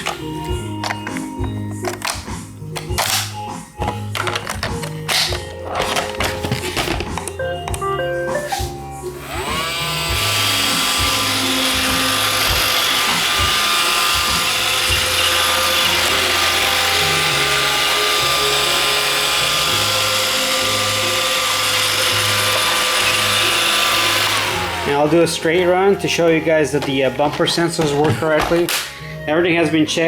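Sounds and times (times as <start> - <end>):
vacuum motor whine: 8.6 - 25.7.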